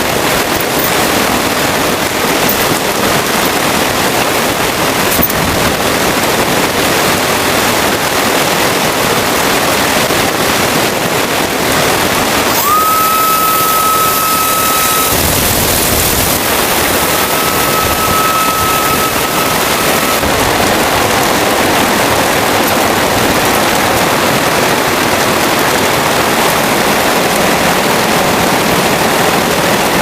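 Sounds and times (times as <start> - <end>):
heavy rain falling: 0.0 - 30.0
thin high tone: 12.4 - 21.2.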